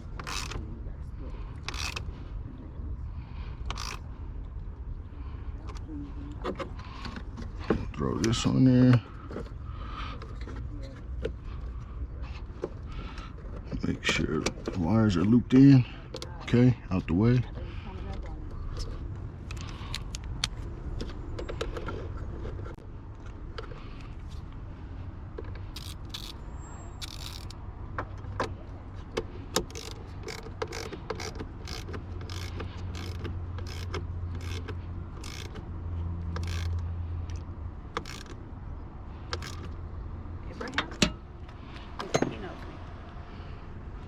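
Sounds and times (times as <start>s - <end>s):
hand tools clicking and tapping: 29.2s - 38.4s, 39.2s - 39.8s.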